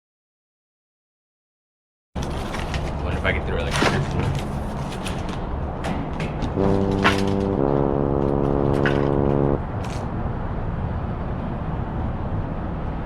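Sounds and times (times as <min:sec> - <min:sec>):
held chord of tones: 0:06.6 - 0:09.6
low rumble: 0:06.6 - 0:09.6.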